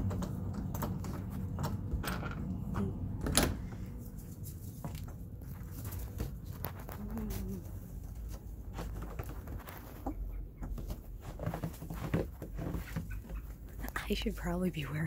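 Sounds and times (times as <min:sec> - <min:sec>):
knocks and clicks: 0:00.0 - 0:03.6
low rumble: 0:00.0 - 0:08.7.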